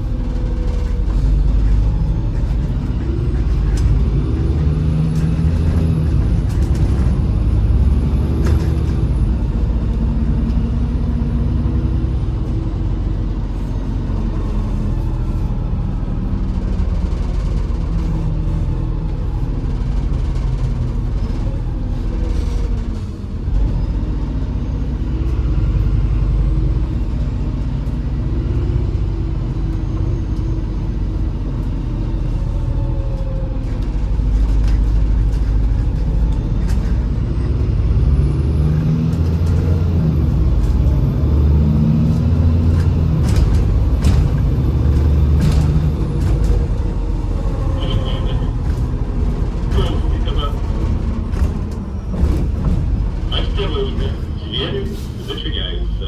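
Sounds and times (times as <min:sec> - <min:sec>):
bus engine and road rumble: 0:00.0 - 0:56.0.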